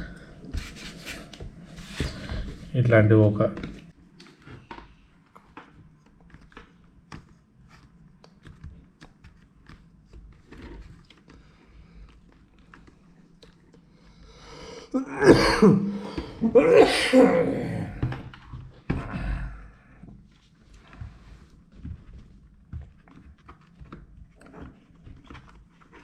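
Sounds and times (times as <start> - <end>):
person coughing: 15.0 - 18.1.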